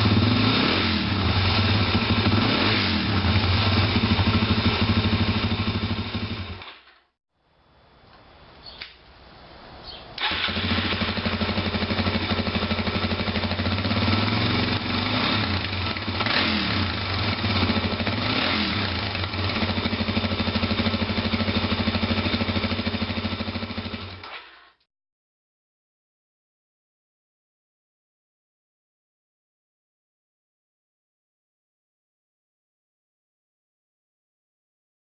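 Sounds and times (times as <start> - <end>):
motorcycle engine starting and revving: 0.0 - 7.2, 10.2 - 24.8.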